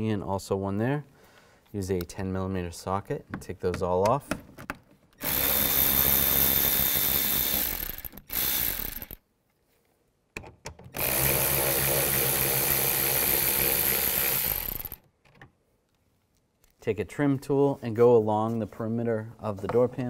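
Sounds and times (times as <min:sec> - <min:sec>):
power drill spinning: 0:05.2 - 0:09.2, 0:11.0 - 0:15.0.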